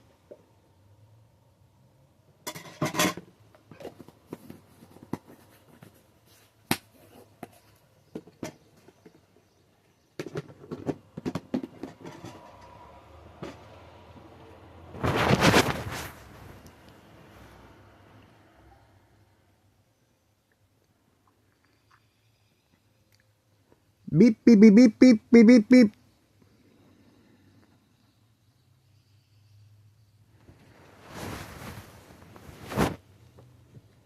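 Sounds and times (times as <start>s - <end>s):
kitchen clicks and knocks: 2.5s - 4.0s.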